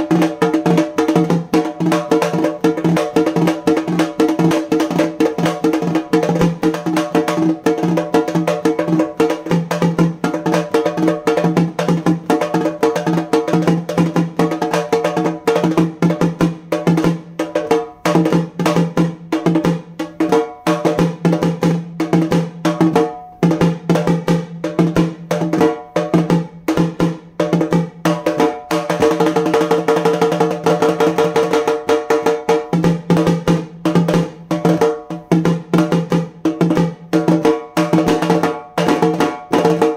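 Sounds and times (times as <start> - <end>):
frame drum beaten with sticks: 0.0 - 39.9.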